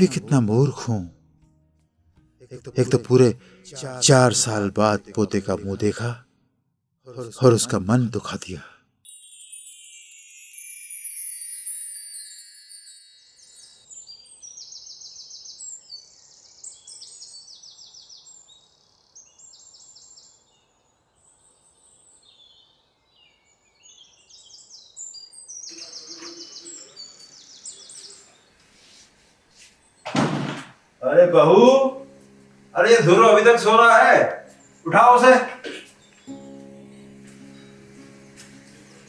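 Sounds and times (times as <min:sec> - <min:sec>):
faint outdoor background: 0:00.0 - 0:39.0
shimmering chime cascade: 0:09.1 - 0:14.0
birds chirping: 0:13.4 - 0:29.2, 0:30.9 - 0:39.0.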